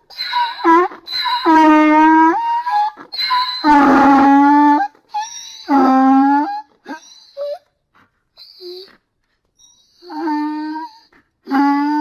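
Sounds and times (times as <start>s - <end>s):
donkey braying: 0.0s - 7.1s.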